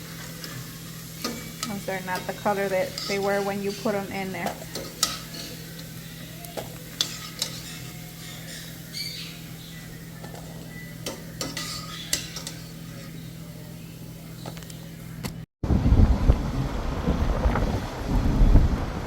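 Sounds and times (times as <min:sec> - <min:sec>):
metal spoon scraping a pot: 0:01.2 - 0:05.9, 0:06.9 - 0:08.9, 0:11.1 - 0:13.2.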